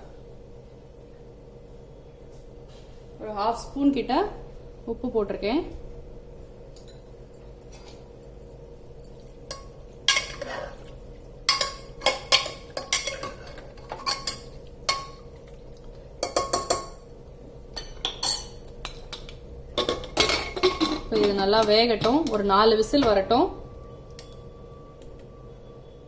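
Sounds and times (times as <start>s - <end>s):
metal spoon clinking on pressure cooker: 11.5s - 15.2s, 16.2s - 17.0s, 17.8s - 22.4s.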